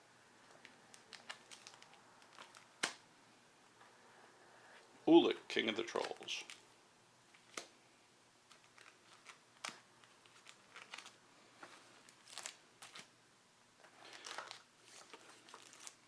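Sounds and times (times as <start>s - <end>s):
plastic bags crinkling: 0.5s - 3.0s, 5.8s - 6.7s, 8.5s - 13.1s, 13.9s - 16.0s.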